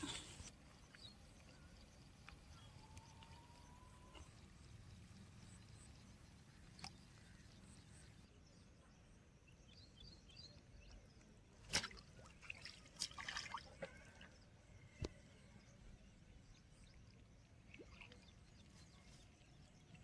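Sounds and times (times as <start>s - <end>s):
small drip-like sounds: 0.0s - 8.2s.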